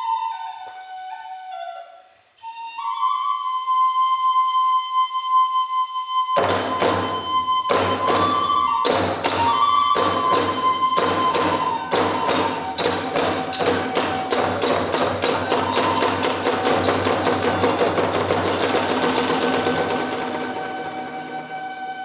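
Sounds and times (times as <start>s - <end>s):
bamboo flute high tone: 0.0s - 22.0s
drum strokes: 6.4s - 22.0s
hand cymbal strokes: 6.4s - 22.0s.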